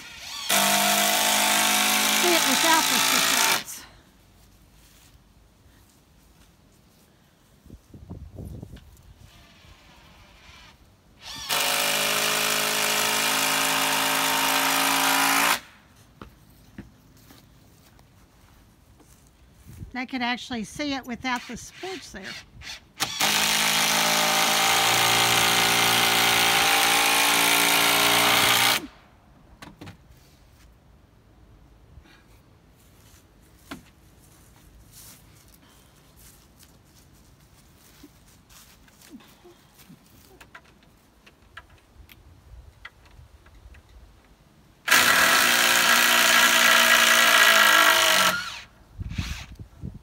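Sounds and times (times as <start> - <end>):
power drill running: 0.0 - 3.7, 11.2 - 15.7, 23.0 - 28.9, 44.9 - 48.7.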